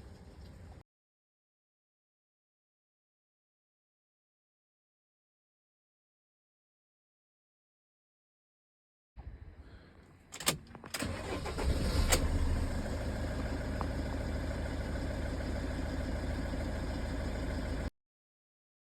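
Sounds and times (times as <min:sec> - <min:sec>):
car engine starting and idling: 0:09.2 - 0:17.9
sharp clicks: 0:10.4 - 0:11.3.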